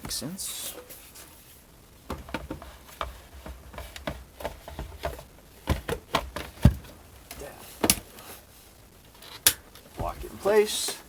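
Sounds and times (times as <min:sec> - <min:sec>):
plastic clicks and knocks: 0:02.0 - 0:08.1.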